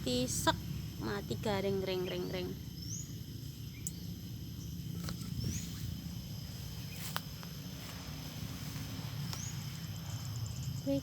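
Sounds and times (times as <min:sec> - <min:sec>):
high insect drone: 0:00.0 - 0:11.0
bird chirping: 0:01.6 - 0:07.2, 0:08.9 - 0:11.0
sharp clicks: 0:03.8 - 0:04.0.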